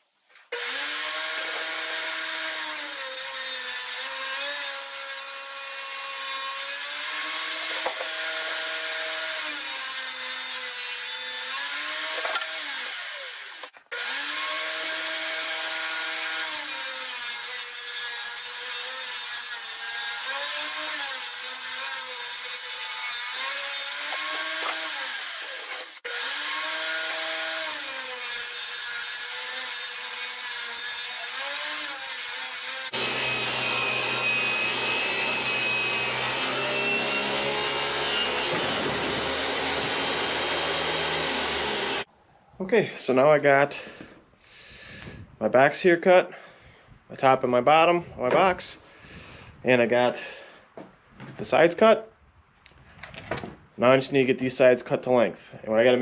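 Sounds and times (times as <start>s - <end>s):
table saw ripping plywood: 0.4s - 8.6s, 9.2s - 14.8s, 15.4s - 42.1s.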